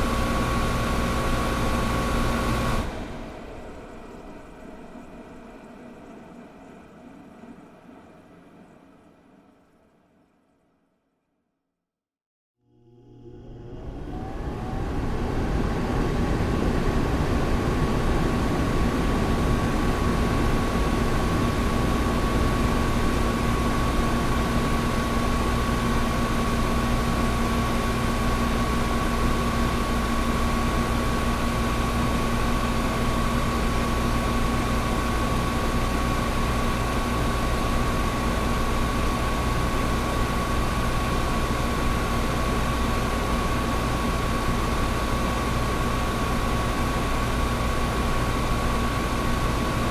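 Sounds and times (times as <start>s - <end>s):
air conditioner fan rushing: 0.0s - 6.4s, 12.8s - 49.9s
low hum: 12.7s - 49.9s
lower drone: 12.7s - 49.9s.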